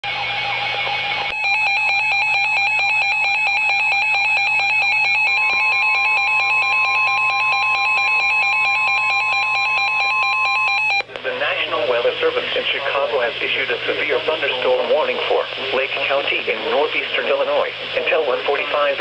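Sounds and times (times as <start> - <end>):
rapidly pulsing electronic alarm: 0.1 - 11.0
steady warning tone: 0.1 - 19.0.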